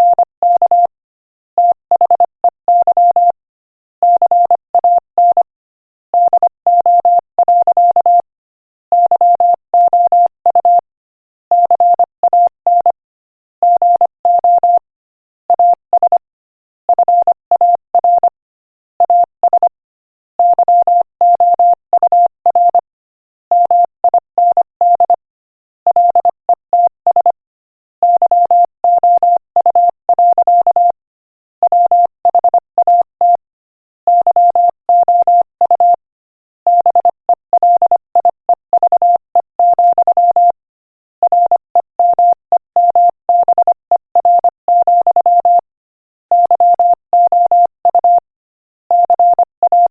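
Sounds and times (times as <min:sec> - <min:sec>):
morse code beeps: 0:00.0 - 0:00.9, 0:01.6 - 0:03.4, 0:04.0 - 0:05.5, 0:06.2 - 0:08.3, 0:09.0 - 0:10.8, 0:11.5 - 0:13.0, 0:13.6 - 0:14.8, 0:15.6 - 0:16.3, 0:19.0 - 0:19.8, 0:20.4 - 0:22.9, 0:23.5 - 0:25.2, 0:25.9 - 0:27.4, 0:28.0 - 0:31.0, 0:31.6 - 0:33.5, 0:34.1 - 0:36.0, 0:36.7 - 0:40.6, 0:41.2 - 0:45.7, 0:46.3 - 0:48.3, 0:48.9 - 0:49.9.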